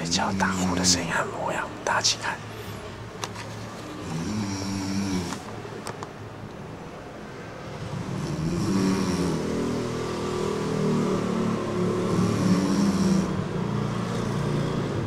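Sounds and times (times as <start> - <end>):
person snoring loudly: 4.0 - 5.4, 8.0 - 9.6, 12.0 - 13.5.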